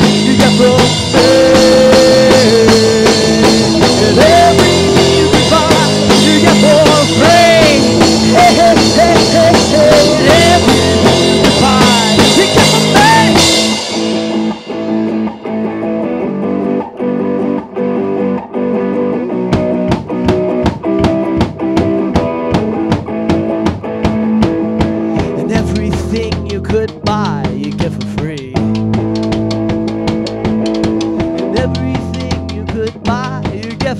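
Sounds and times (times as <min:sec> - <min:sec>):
drum hits: 0:00.0 - 0:15.6, 0:19.5 - 0:33.9
electric guitar bending notes: 0:00.0 - 0:33.9
rock band playing: 0:00.0 - 0:33.9.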